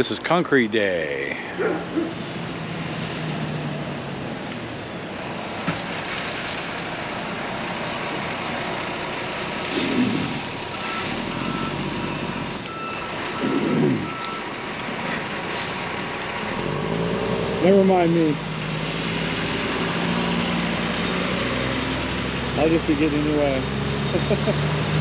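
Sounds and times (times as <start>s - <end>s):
diesel truck engine running: 0.0s - 25.0s
reversing beeper: 10.1s - 14.6s, 22.6s - 25.0s.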